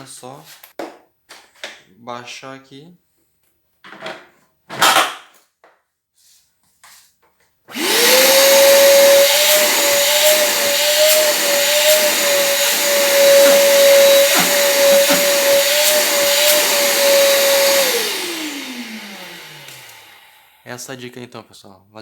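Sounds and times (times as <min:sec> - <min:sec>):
vacuum cleaner motor running: 0:07.7 - 0:20.7.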